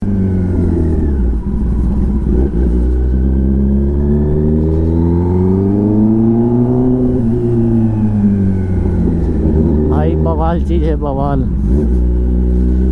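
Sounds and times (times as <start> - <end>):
motorcycle engine accelerating: 0.0 - 12.9.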